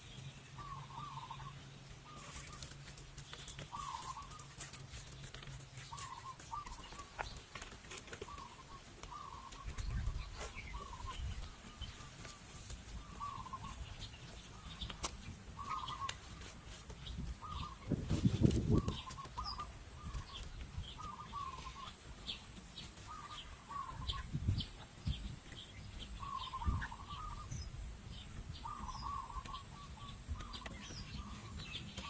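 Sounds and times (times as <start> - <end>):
short wavering bird calls: 0.5 - 2.8, 3.6 - 4.6, 5.8 - 7.2, 8.2 - 16.7, 17.4 - 17.9, 18.6 - 22.0, 23.0 - 24.3, 26.2 - 27.7, 28.6 - 32.0.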